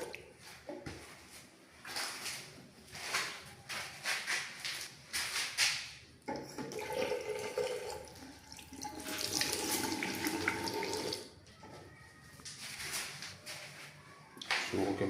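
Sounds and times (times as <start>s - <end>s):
tap water running: 6.3s - 11.3s.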